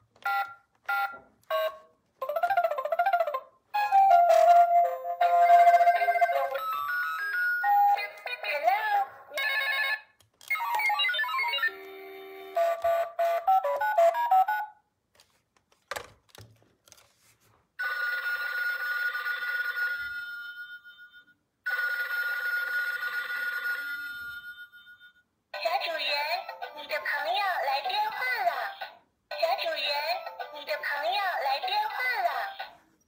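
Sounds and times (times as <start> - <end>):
telephone ringing: 0.2 - 8.6, 9.4 - 14.8, 17.8 - 25.3.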